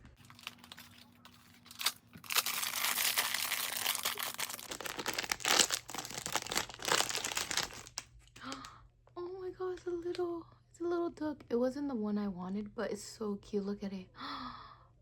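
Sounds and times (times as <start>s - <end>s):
packaging crinkling and tearing: 0.0s - 8.7s.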